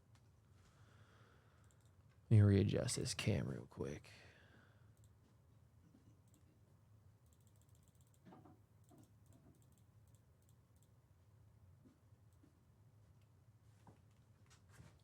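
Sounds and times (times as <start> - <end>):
faint clicks: 1.6 - 2.0, 5.0 - 5.2, 7.3 - 11.0.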